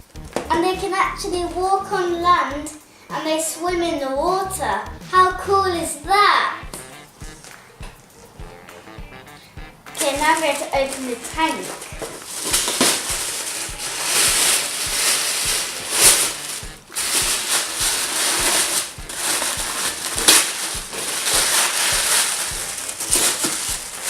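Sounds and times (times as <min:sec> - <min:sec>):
packaging rustling and crinkling: 0:10.0 - 0:24.0.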